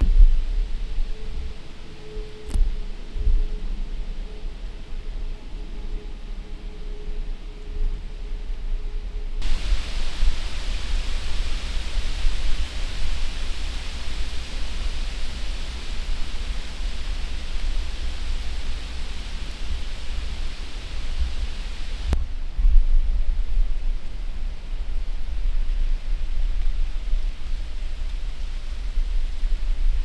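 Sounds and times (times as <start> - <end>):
steady hiss: 9.4 - 22.6
wind buffeting microphone: 9.4 - 30.0.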